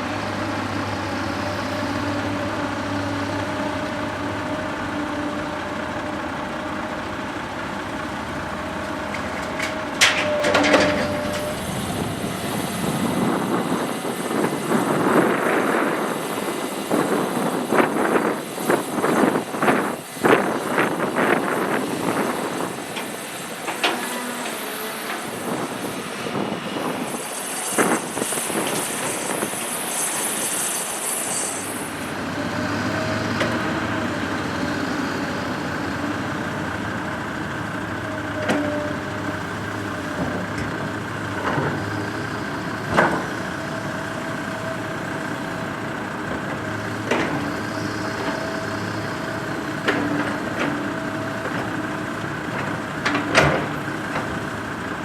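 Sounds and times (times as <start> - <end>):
diesel engine running: 0.0 - 55.0
clanks and knocks: 9.1 - 11.5.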